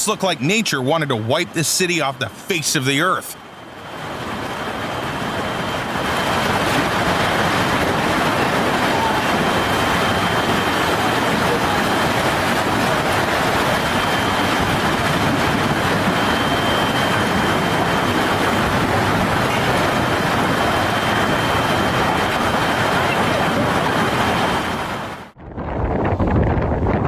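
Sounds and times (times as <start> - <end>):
heavy rain: 0.0 - 25.4
wind: 0.0 - 27.0.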